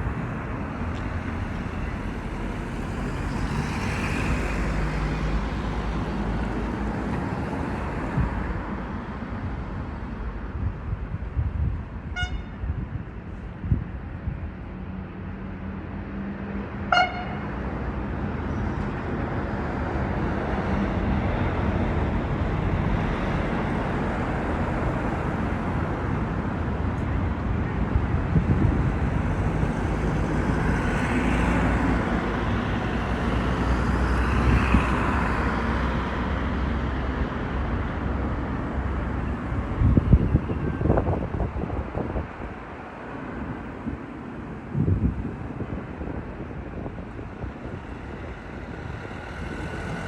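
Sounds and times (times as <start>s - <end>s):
short high horn toot: 12.2s - 12.6s.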